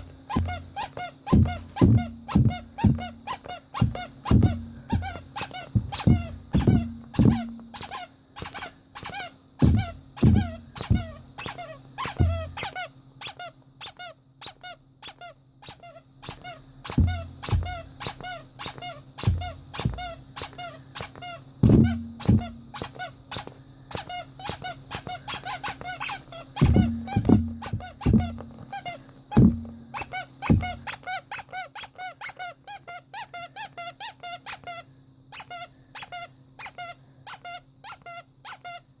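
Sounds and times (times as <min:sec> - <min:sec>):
thuds of toy being handled: 0:00.0 - 0:07.9, 0:09.6 - 0:11.3, 0:12.0 - 0:12.7, 0:16.9 - 0:24.1, 0:26.6 - 0:31.0
rubber squeaky toy squeaking: 0:00.0 - 0:38.9.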